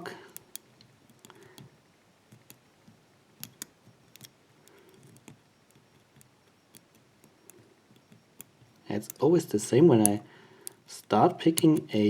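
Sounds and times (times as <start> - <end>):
lock pick clicking in padlock: 0.3 - 1.7, 2.3 - 12.0.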